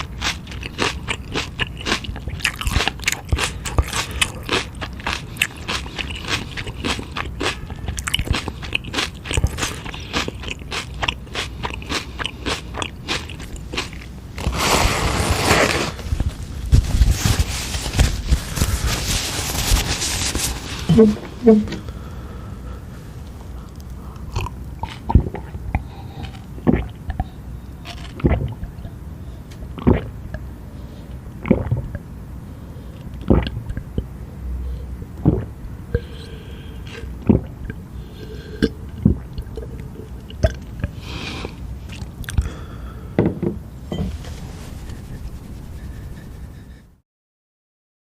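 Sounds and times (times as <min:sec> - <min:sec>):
chewing and mouth smacks: 0:00.0 - 0:14.1, 0:23.4 - 0:28.6, 0:41.9 - 0:42.5.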